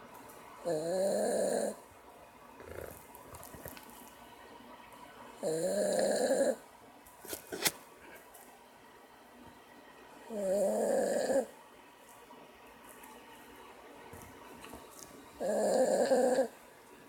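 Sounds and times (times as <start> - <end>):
dog snoring loudly: 0.6 - 1.8, 2.6 - 3.0, 5.4 - 6.6, 10.3 - 11.5, 15.4 - 16.6.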